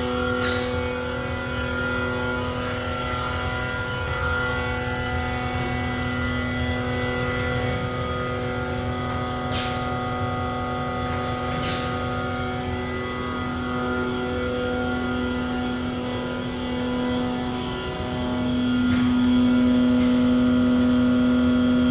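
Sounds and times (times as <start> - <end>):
machine hum with tones: 0.0 - 21.9.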